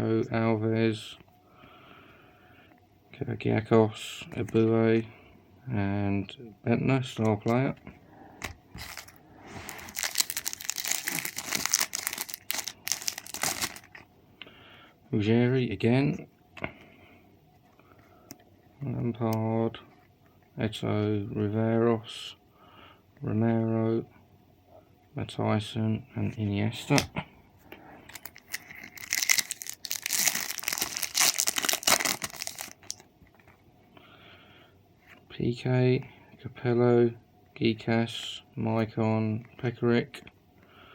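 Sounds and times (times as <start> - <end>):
plastic packet crinkling and tearing: 8.8 - 14.0, 28.1 - 33.0.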